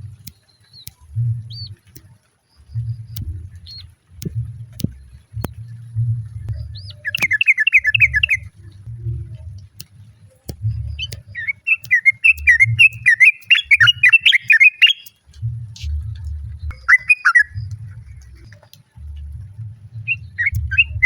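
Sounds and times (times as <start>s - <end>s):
low rumble: 0.0s - 0.2s, 1.0s - 1.9s, 2.6s - 7.2s, 7.8s - 11.6s, 15.2s - 21.0s
bird warbling chatter calls: 6.6s - 8.5s, 10.9s - 15.2s, 16.7s - 18.8s, 20.1s - 21.0s.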